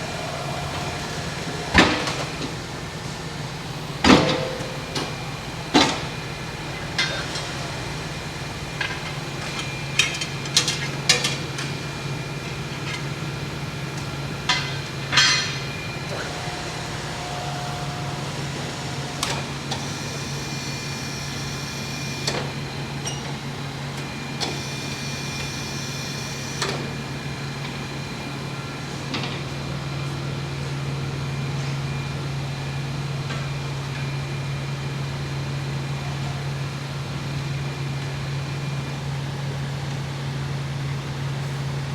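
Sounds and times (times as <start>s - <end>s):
low machine hum: 0.0s - 31.4s.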